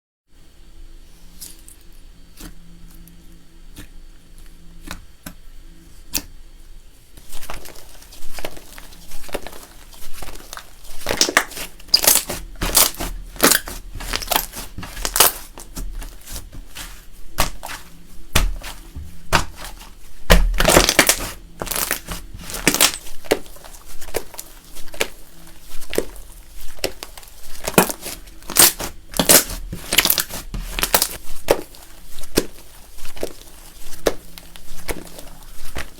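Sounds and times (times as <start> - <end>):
slime crackling and crunching: 7.2 - 35.9.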